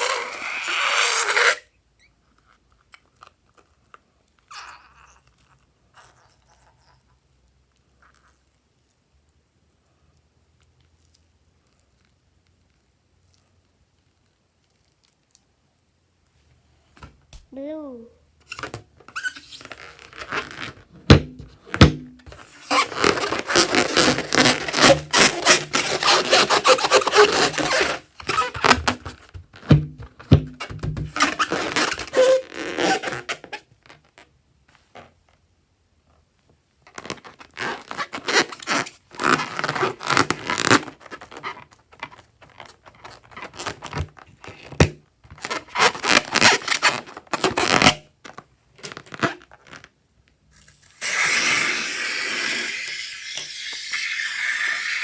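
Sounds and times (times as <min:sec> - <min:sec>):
sticky slime crackling and scraping: 0:18.5 - 0:33.2.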